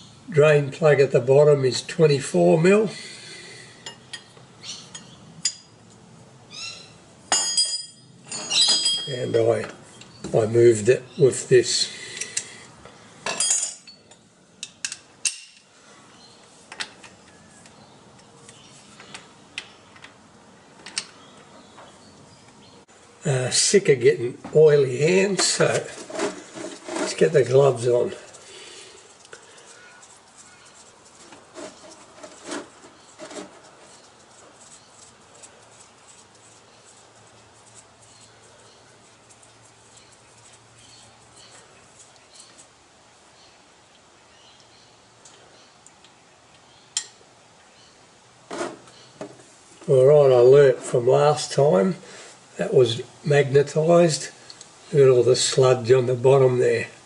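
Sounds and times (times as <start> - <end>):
metal hand tools clattering: 7.3 - 9.1.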